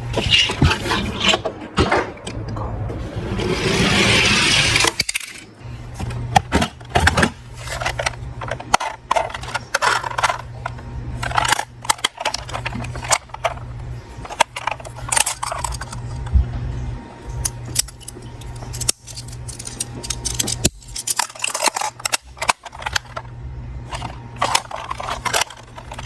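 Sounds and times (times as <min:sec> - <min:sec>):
steady low hum: 0:00.0 - 0:26.0
metal toy cars clinking: 0:07.0 - 0:10.5, 0:11.2 - 0:13.6, 0:14.2 - 0:16.1, 0:17.4 - 0:23.3, 0:23.9 - 0:26.0.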